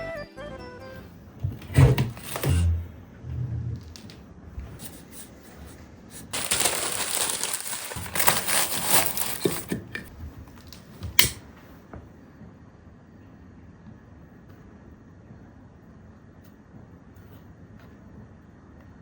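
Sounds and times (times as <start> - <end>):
paper crumpling: 2.1 - 2.7, 4.8 - 10.1.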